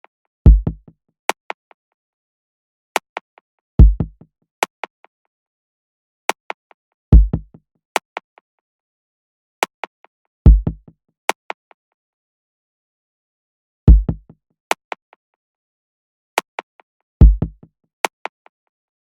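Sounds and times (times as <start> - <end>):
deep booming kick drum: 0.5 - 0.8, 3.8 - 4.2, 7.2 - 7.5, 10.5 - 10.8, 13.9 - 14.2, 17.2 - 17.6.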